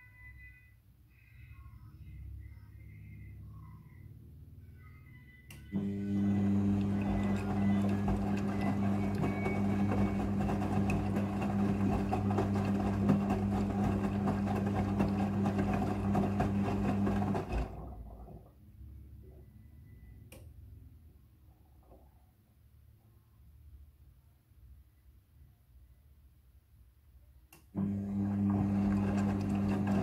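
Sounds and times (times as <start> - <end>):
washing machine motor hum: 5.7 - 19.4, 27.7 - 30.0.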